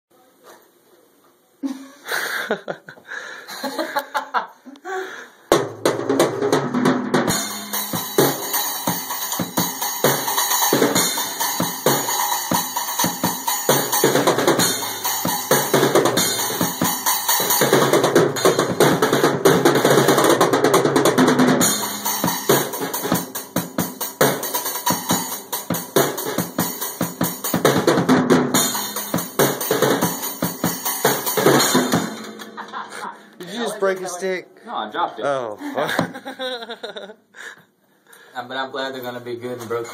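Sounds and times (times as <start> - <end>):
drum strikes: 5.5 - 34.1
cymbals ringing: 7.3 - 18.6, 21.6 - 25.6, 28.6 - 34.0.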